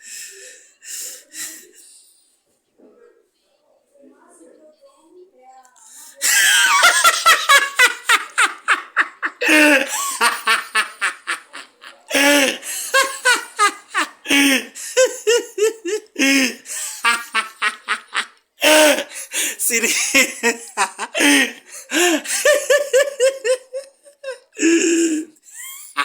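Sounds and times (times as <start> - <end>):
person laughing loudly: 6.2 - 26.0.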